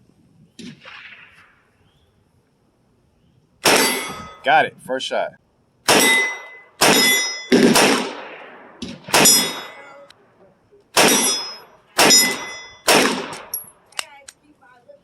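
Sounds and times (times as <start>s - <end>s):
gunshots with metallic ring: 3.6s - 4.4s, 5.9s - 10.1s, 10.9s - 13.8s.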